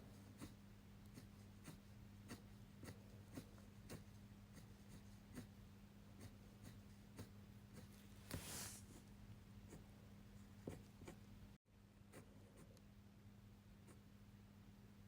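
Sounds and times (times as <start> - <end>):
pen scratching on paper: 0.0 - 5.6, 6.2 - 9.0.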